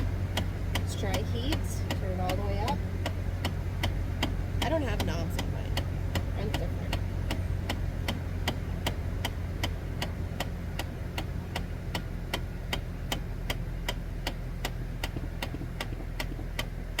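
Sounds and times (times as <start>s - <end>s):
low steady hum: 0.0s - 17.0s
rapid clicking under dashboard: 0.0s - 17.0s.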